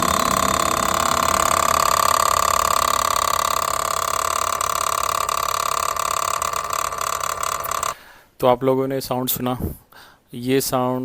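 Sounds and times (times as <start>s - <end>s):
engine mechanical rattle: 0.0s - 8.0s
steady high whine: 0.0s - 8.0s.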